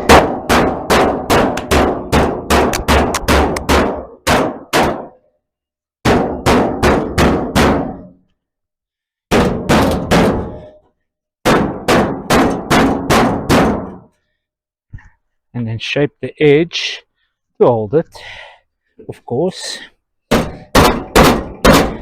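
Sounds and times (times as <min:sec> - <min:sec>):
hammer beating steel plate: 0:00.0 - 0:05.2, 0:06.0 - 0:08.2, 0:09.3 - 0:10.8, 0:11.4 - 0:14.1, 0:20.3 - 0:22.0.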